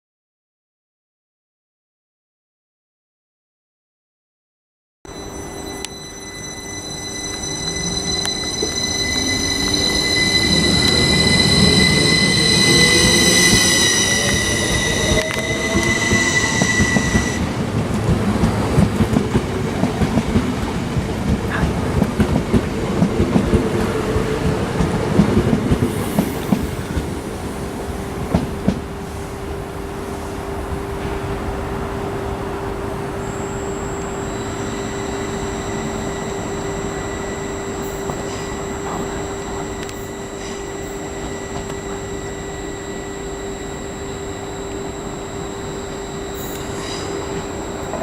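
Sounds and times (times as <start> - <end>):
train wheel squeal: 5.1 - 17.6, 21.5 - 28.8, 33.0 - 48.0.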